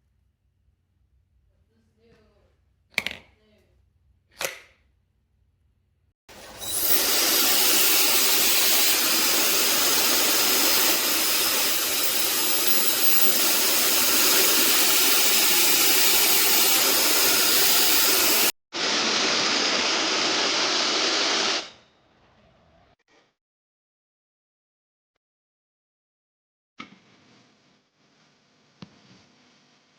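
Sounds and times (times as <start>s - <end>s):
hair dryer running: 6.3s - 21.0s.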